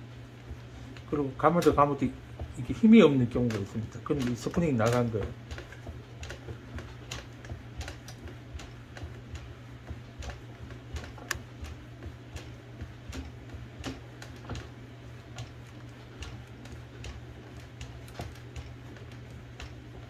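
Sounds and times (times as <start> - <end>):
steady low hum: 0.0 - 20.0
typewriter mechanism clicking: 3.4 - 6.4.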